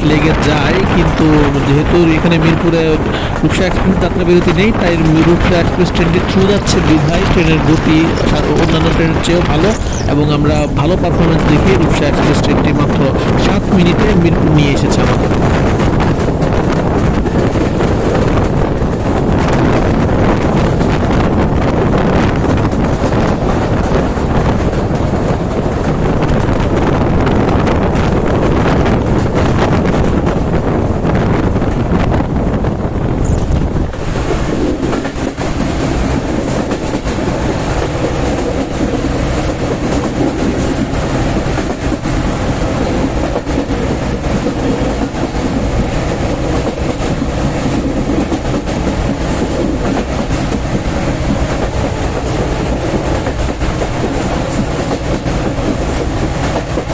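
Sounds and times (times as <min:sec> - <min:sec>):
train rumble: 0:00.0 - 0:56.9
wheels clattering over rails: 0:33.1 - 0:56.9.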